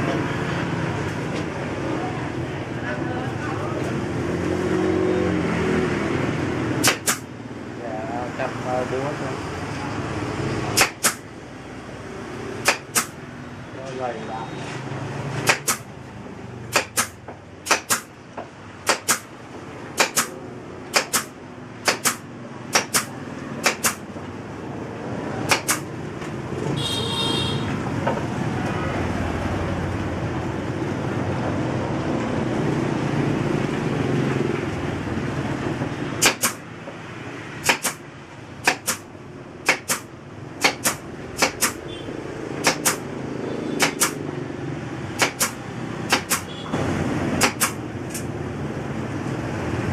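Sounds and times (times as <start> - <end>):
hammer striking wood: 6.8 - 7.3, 10.7 - 11.2, 12.6 - 13.2, 15.4 - 15.9, 16.7 - 19.3, 20.0 - 24.1, 25.4 - 25.9, 36.2 - 37.0, 37.6 - 38.0, 38.6 - 41.8, 42.6 - 43.0, 43.8 - 44.2, 45.2 - 46.6, 47.4 - 48.2.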